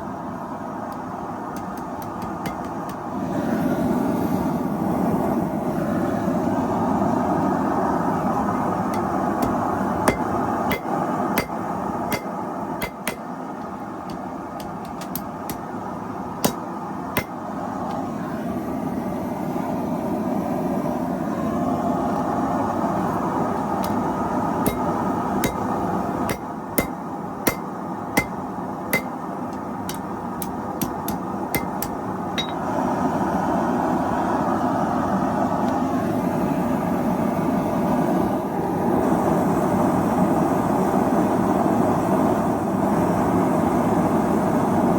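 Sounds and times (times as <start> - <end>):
steady rushing noise: 0.0 - 34.2
hammer striking steel on anvil: 1.6 - 3.0, 8.9 - 13.3, 14.1 - 15.7, 16.4 - 16.6, 17.2 - 17.4, 24.7 - 29.2, 29.9 - 32.6.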